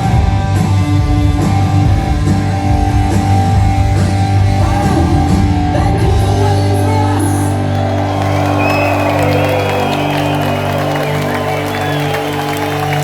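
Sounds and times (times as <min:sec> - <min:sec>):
drums and cymbals: 0:00.0 - 0:06.9
bass guitar: 0:00.0 - 0:13.0
distorted electric guitar: 0:00.0 - 0:13.0
shouted vocals: 0:06.7 - 0:13.0.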